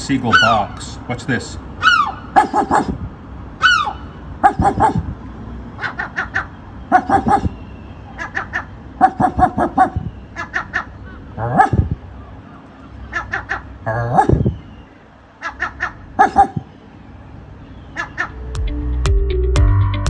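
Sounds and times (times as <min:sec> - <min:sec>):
seagull barking calls: 0:00.1 - 0:01.0, 0:01.7 - 0:18.5
seagull falling squawk: 0:01.8 - 0:02.9, 0:03.6 - 0:04.0.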